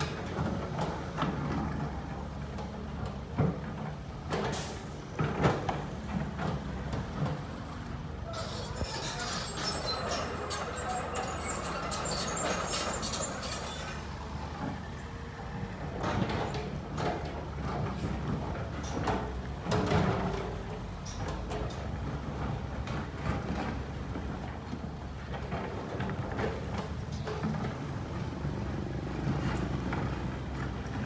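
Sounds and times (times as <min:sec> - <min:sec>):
excavator diesel engine running: 0:00.0 - 0:31.0
gritty scraping: 0:08.4 - 0:14.0.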